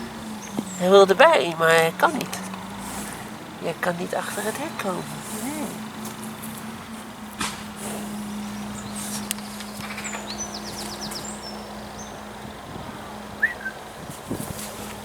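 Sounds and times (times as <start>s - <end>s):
bird chirping: 0.0s - 12.5s, 13.4s - 13.8s
horse shuffling: 0.0s - 12.6s, 13.4s - 15.0s
sharp knocks: 7.4s - 7.7s.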